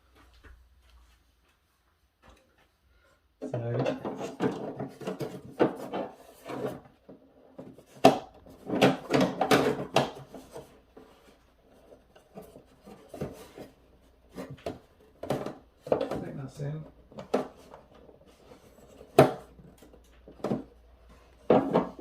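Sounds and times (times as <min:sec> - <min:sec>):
hard plastic pieces knocking: 0:03.4 - 0:10.7, 0:14.3 - 0:22.0.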